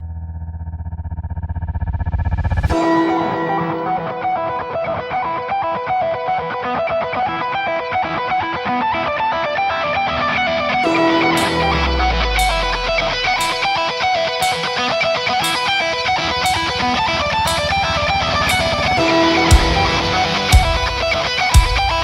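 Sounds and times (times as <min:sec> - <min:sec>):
sharp cymbal crashes: 0:02.7 - 0:05.2, 0:10.7 - 0:22.0
picked guitar notes: 0:02.7 - 0:22.0.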